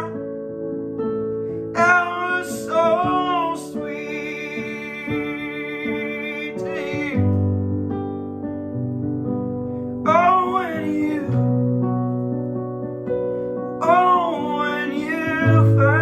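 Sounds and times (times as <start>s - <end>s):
person singing: 1.8s - 7.4s, 10.1s - 11.4s, 13.8s - 16.0s.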